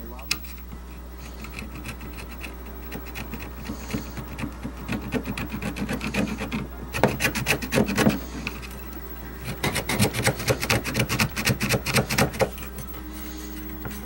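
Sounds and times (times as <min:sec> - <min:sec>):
steady low hum: 0:00.0 - 0:14.0
blade scraping glue: 0:00.7 - 0:13.6.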